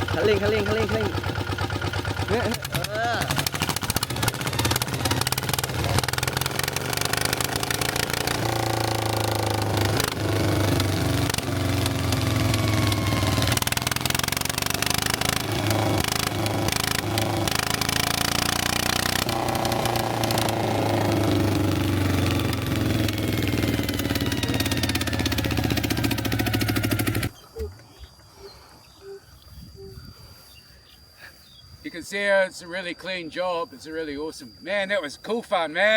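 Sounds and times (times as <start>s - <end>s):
walking tractor engine running: 0.0s - 28.3s
steady clatter: 0.9s - 10.2s.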